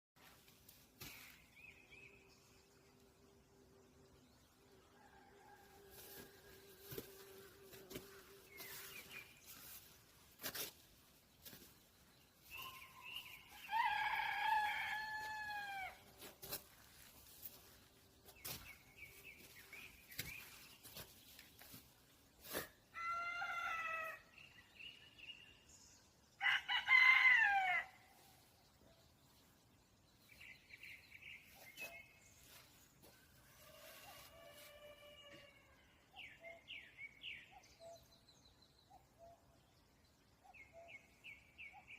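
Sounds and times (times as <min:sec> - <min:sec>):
rooster crowing: 0:13.5 - 0:16.0, 0:23.0 - 0:24.2, 0:26.4 - 0:27.9.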